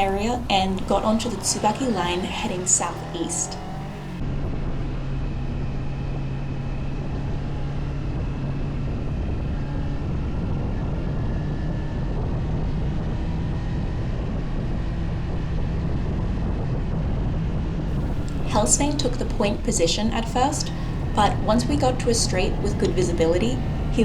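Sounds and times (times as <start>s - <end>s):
motorcycle engine cruising: 0.0s - 5.6s, 17.9s - 24.0s.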